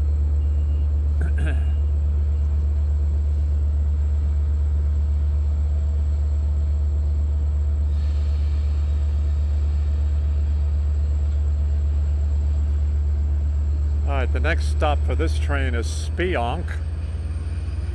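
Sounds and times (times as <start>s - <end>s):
diesel locomotive idling: 0.0s - 17.9s
faint hiss: 7.8s - 16.7s.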